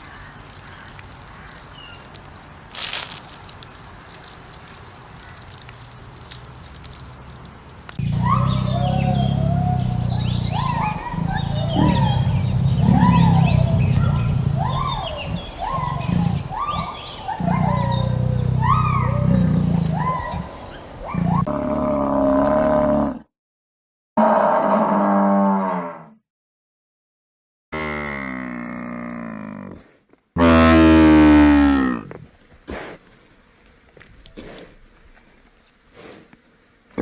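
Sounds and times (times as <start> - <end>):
cheetahs chirping: 3.6 - 21.6
cheetah call: 8.0 - 17.0.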